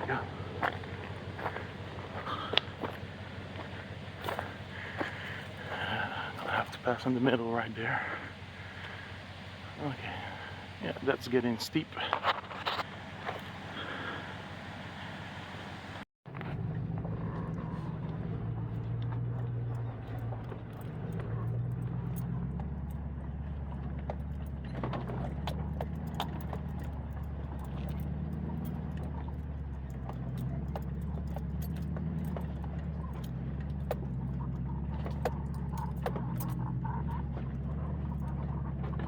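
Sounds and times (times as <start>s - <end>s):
truck rattling: 0.0s - 13.6s, 16.5s - 39.0s
truck engine pulling at low revs: 0.0s - 39.0s
stones clicking under tyres: 0.1s - 6.6s, 18.0s - 39.0s.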